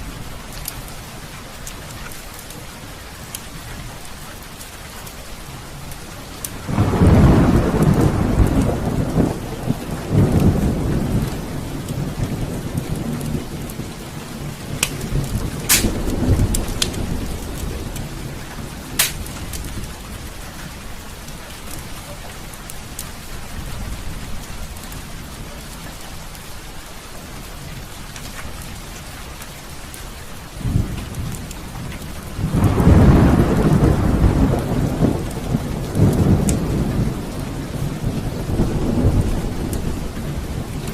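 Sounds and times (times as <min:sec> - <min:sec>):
heavy rain falling: 0:00.0 - 0:40.9
thunder rumbling: 0:06.5 - 0:21.0, 0:30.5 - 0:40.9
sharp snaps: 0:14.8 - 0:17.0, 0:18.9 - 0:19.6.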